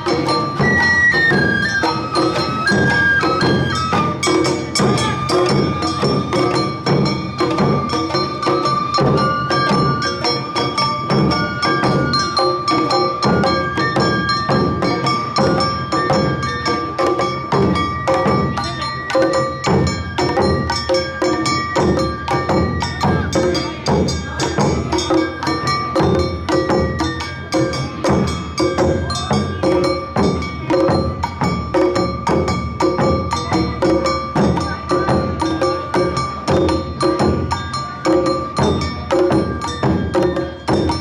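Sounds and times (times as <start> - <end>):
drums beating: 0.0 - 41.0
high flute tone: 0.4 - 10.5, 11.2 - 14.8.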